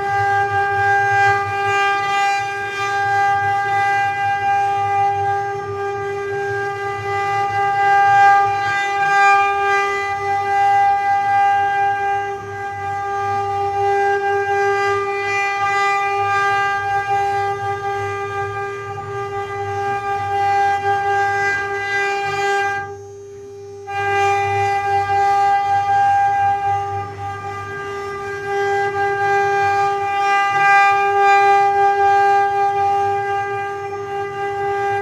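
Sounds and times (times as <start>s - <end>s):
spindle motor whining: 0.0s - 35.0s.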